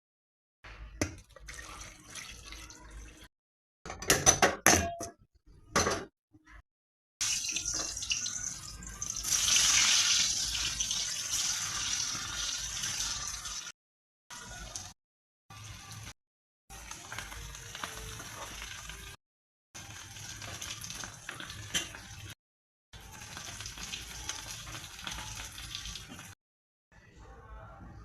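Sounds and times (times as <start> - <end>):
dishes clinking and knocking: 3.9 - 6.1.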